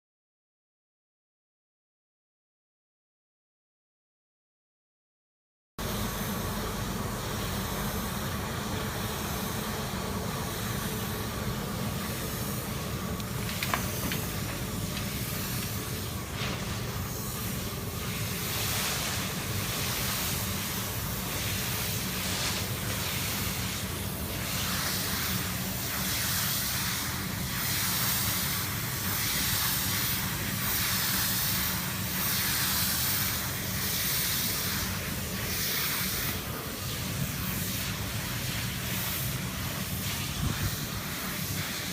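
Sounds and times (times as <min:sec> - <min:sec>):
low machine hum: 0:05.8 - 0:26.3
steady hiss: 0:05.8 - 0:41.9.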